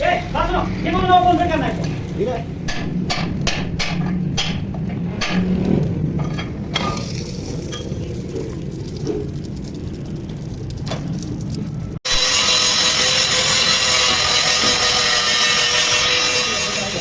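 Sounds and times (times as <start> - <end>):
sharp knocks: 2.6 - 5.8.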